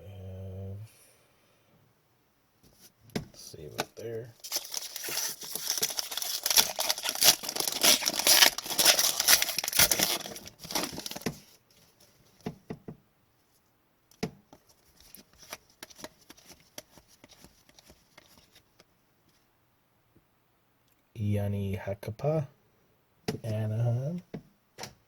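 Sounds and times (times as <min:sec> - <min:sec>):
foil wrapper tearing and crinkling: 0:04.4 - 0:11.5
cards clicking and tapping: 0:15.2 - 0:18.9.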